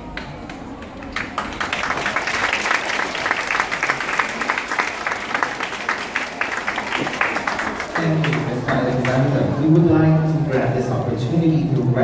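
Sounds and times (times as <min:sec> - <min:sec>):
children applauding: 0:00.8 - 0:09.2.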